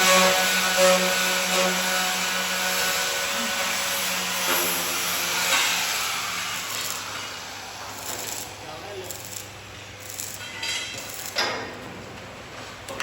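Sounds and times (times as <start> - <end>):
power tool running: 0.0 - 10.4.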